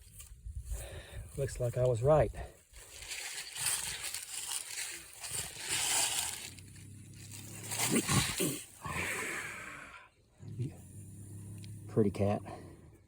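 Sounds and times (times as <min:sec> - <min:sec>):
bobcat growling: 0:05.2 - 0:12.9.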